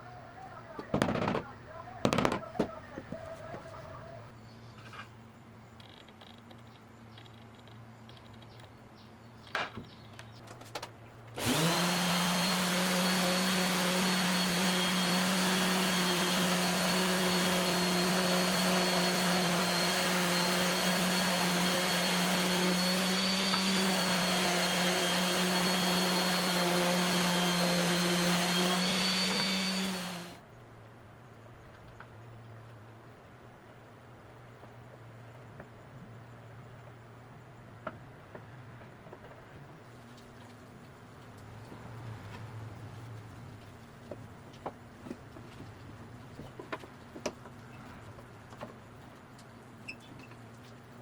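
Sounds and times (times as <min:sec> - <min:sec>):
electric motor running: 0:11.4 - 0:30.4.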